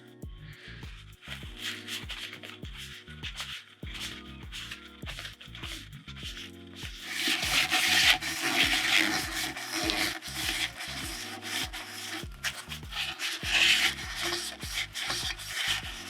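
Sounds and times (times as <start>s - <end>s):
rasping scrubbing: 0.0s - 16.0s.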